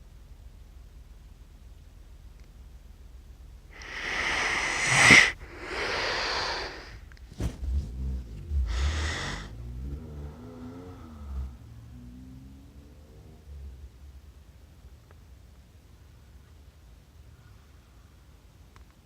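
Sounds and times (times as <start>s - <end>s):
person snoring: 3.8s - 7.0s, 8.6s - 9.5s
sharp snort: 3.8s - 9.6s.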